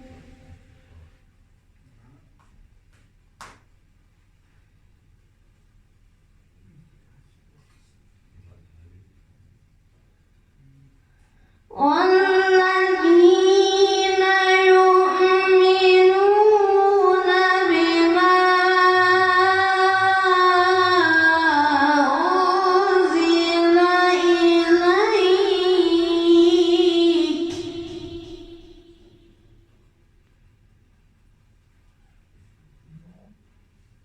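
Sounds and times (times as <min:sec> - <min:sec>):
person reciting melodically: 0:11.7 - 0:29.4.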